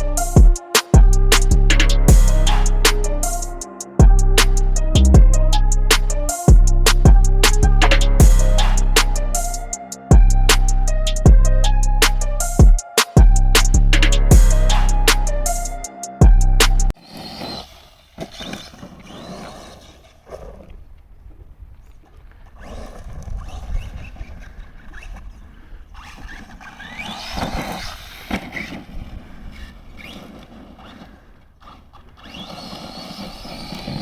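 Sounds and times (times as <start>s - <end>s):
tyres on dirt: 16.7s - 34.0s
electric motor whining: 26.0s - 34.0s.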